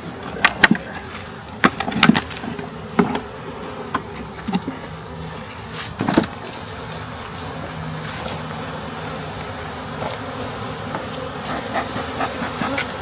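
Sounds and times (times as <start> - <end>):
bees buzzing: 0.0 - 13.0
wooden knocks and scrapes: 5.9 - 6.6.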